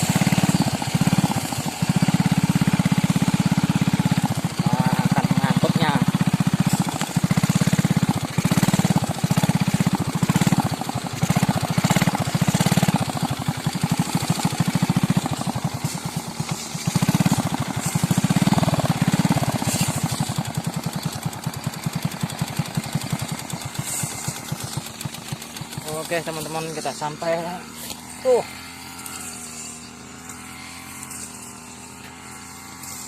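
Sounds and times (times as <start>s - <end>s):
motorcycle engine thumping: 0.0s - 29.2s.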